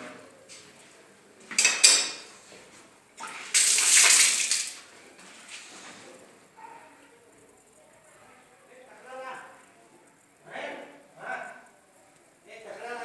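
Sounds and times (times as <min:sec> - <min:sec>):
water splashes: 0:03.2 - 0:04.9
tap water gushing: 0:03.2 - 0:05.0.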